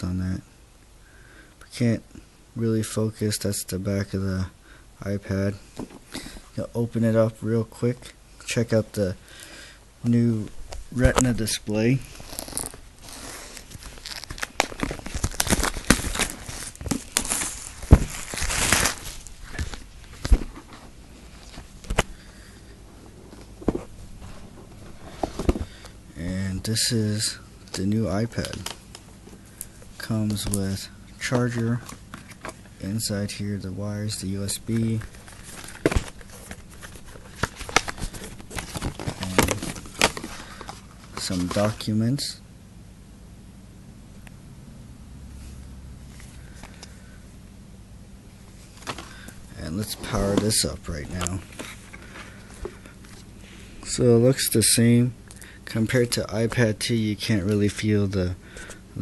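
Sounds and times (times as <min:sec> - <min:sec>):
packaging crinkling and rustling: 0:10.7 - 0:22.3, 0:27.7 - 0:32.7, 0:34.4 - 0:41.9, 0:48.6 - 0:54.0.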